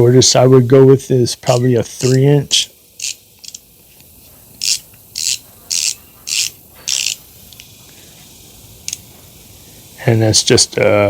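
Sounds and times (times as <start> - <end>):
ratcheting screwdriver rasping: 3.0 - 7.7.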